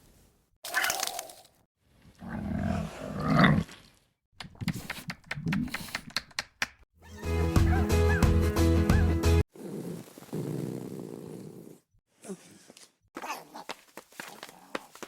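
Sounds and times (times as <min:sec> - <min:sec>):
animal-like roaring and growling: 0:02.2 - 0:03.7.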